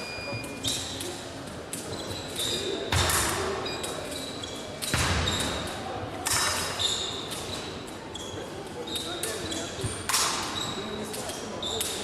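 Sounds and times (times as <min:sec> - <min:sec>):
short high squeaks: 0:06.7 - 0:09.7.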